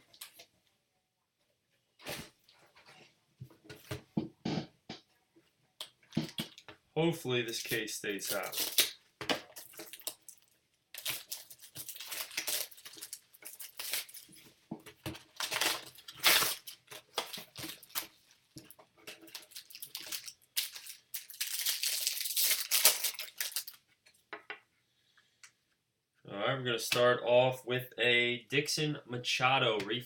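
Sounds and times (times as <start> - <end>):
wrappers tearing and crinkling: 7.6 - 14.5, 15.2 - 18.3, 19.1 - 23.8.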